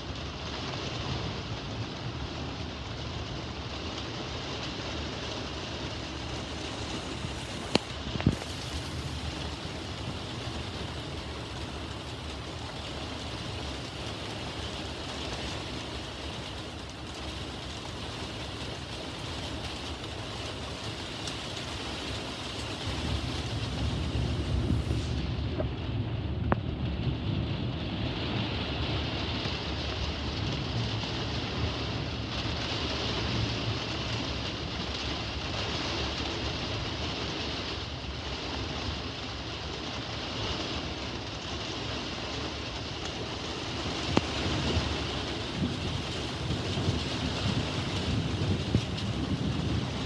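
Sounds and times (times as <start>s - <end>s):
heavy rain and wind: 0.0s - 50.0s
thunder rumble: 3.2s - 32.0s, 42.3s - 50.0s.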